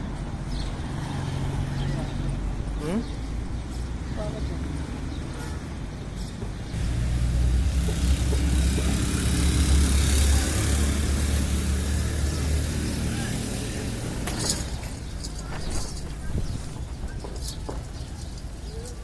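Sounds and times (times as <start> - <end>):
vehicle engine drone: 6.7 - 15.3.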